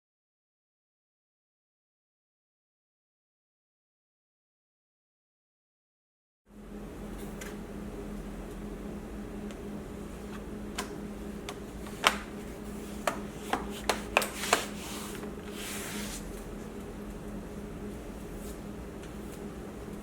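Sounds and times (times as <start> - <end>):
rubbing sound: 12.4 - 16.4.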